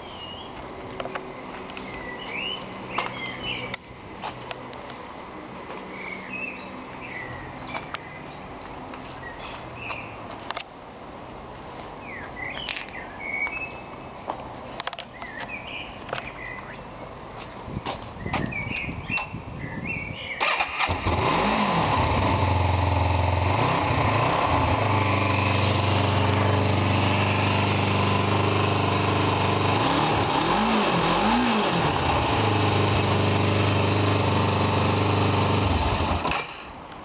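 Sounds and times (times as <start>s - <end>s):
motorcycle engine idling and revving: 20.4s - 36.8s.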